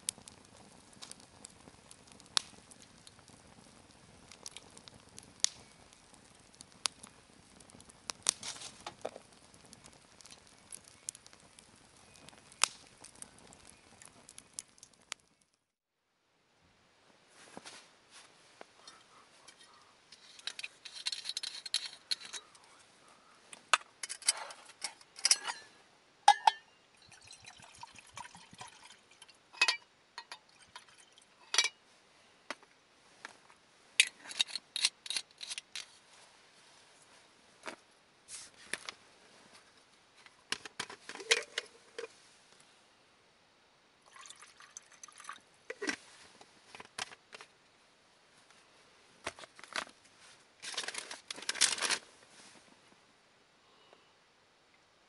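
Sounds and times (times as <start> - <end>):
liquid being poured: 27.0 - 29.4, 30.3 - 31.4, 44.0 - 45.4.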